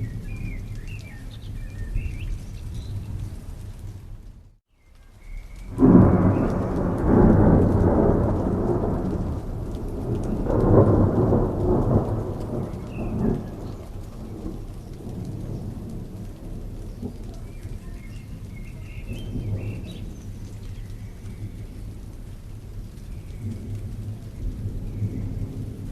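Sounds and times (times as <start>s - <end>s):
steady rain hiss: 0.0s - 25.9s
thunder rumbling: 5.2s - 25.9s.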